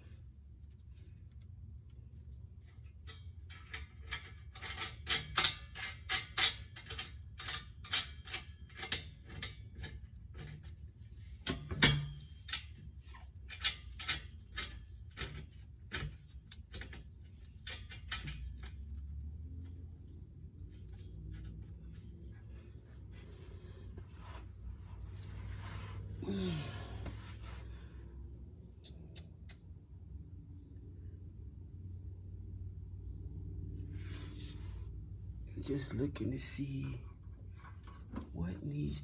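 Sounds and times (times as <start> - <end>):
tools and metal parts knocking: 2.8 - 19.0.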